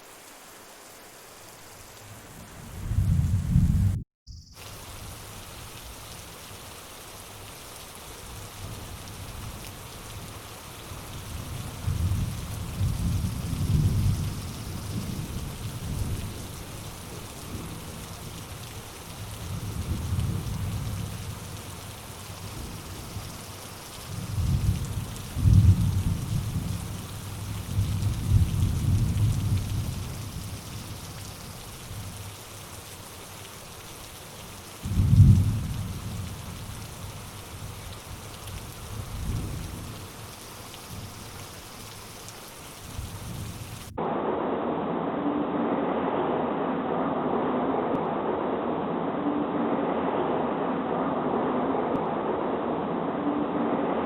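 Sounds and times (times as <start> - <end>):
steady rain falling: 0.0 - 44.0
thunder rumbling: 2.4 - 4.0, 10.9 - 32.3, 34.8 - 40.2.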